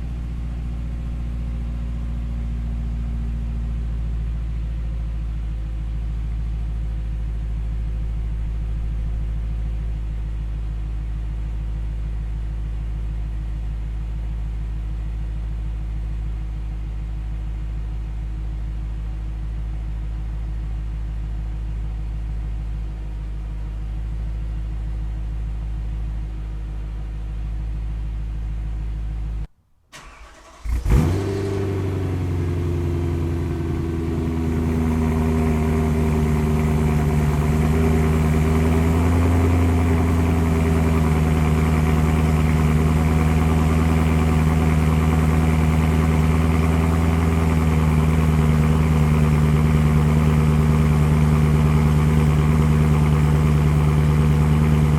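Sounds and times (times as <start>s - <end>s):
car engine idling: 0.0s - 54.9s
engine cranking and starting: 29.9s - 32.0s.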